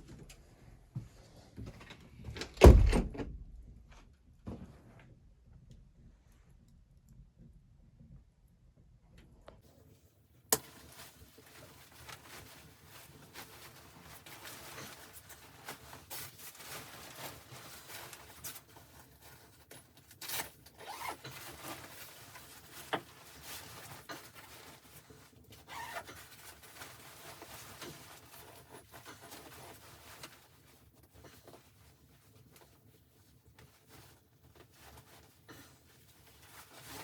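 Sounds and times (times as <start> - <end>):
rustling and rubbing: 9.7 - 37.0.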